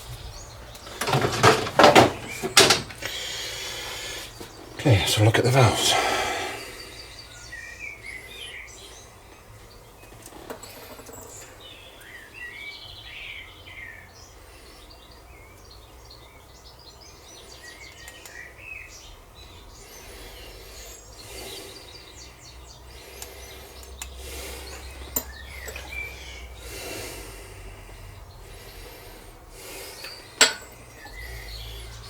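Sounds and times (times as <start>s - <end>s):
handling noises: 0.0s - 6.2s, 29.7s - 32.0s
birds chirping: 0.0s - 32.0s.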